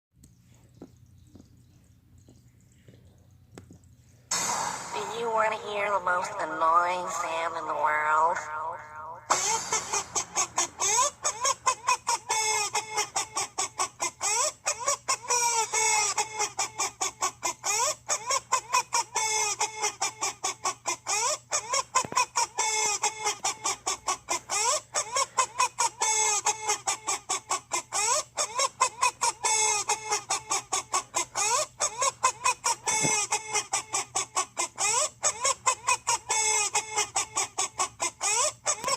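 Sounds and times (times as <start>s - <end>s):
song of chicken clucks: 21.9s - 38.9s.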